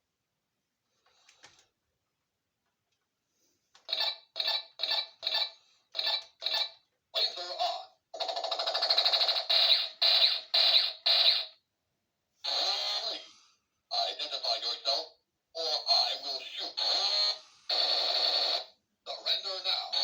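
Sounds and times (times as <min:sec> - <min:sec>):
toy robot beeping bursts: 0:08.2 - 0:11.6
toy robot warbling buzz: 0:08.2 - 0:11.6.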